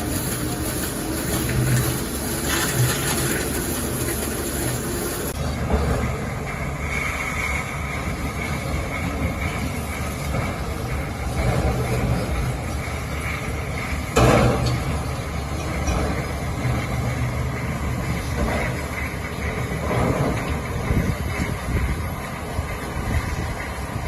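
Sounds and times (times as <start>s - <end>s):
excavator rock saw running: 0.0s - 24.0s.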